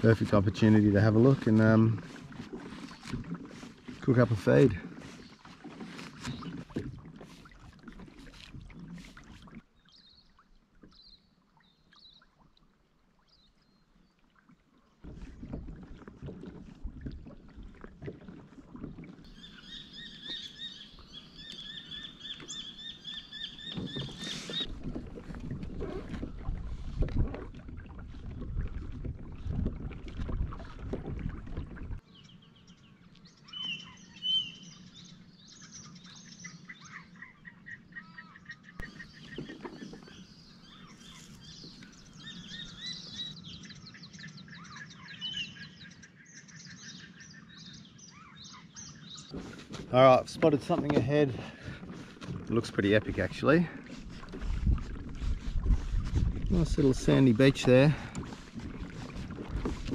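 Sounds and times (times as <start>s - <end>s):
water sloshing against kayak hull: 0.0s - 32.1s, 38.7s - 45.0s, 48.1s - 59.9s
birds chirping: 4.0s - 6.9s, 19.3s - 24.8s, 32.1s - 54.3s
bird trilling: 19.3s - 24.7s.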